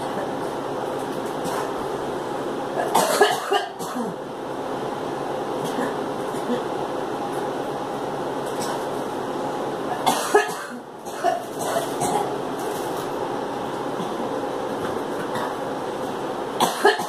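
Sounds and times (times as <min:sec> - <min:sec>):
steady background noise: 0:00.0 - 0:17.0
girl coughing: 0:02.8 - 0:04.2, 0:10.0 - 0:12.4, 0:16.6 - 0:17.0.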